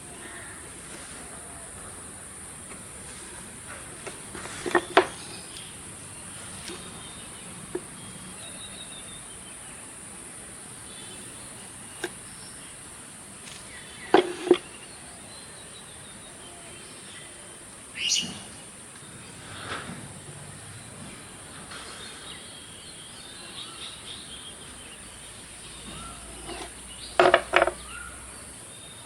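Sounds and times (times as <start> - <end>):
steady high hiss: 0.0 - 29.0
wood pieces knocking: 2.7 - 5.7, 13.4 - 14.7, 25.9 - 27.8.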